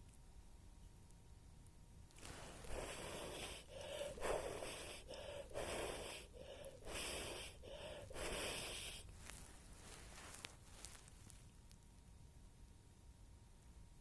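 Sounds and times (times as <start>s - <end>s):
person blowing breathy puffs: 2.2s - 10.9s.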